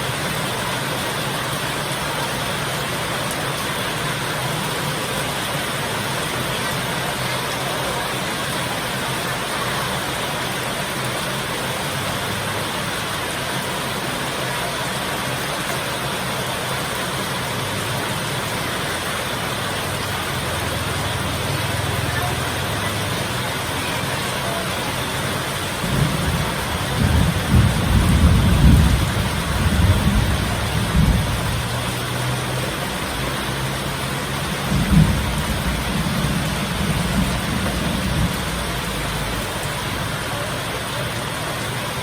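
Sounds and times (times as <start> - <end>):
heavy rain: 0.0 - 42.0
thunder rumbling: 25.7 - 32.0, 32.9 - 39.8.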